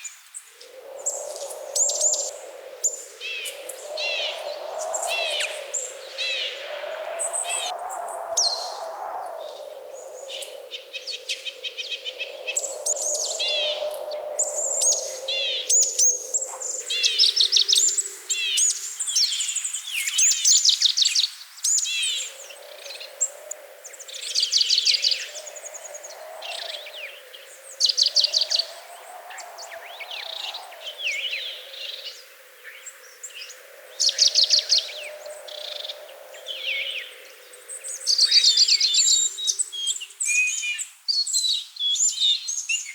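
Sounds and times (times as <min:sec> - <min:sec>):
songbirds chirping and trilling: 0:00.0 - 0:42.9.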